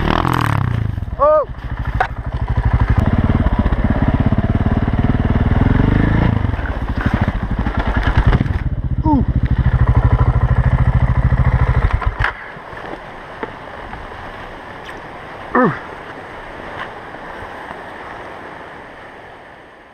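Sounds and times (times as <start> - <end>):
wind and water hiss: 0.0 - 19.9
motorcycle engine idling: 0.9 - 12.2.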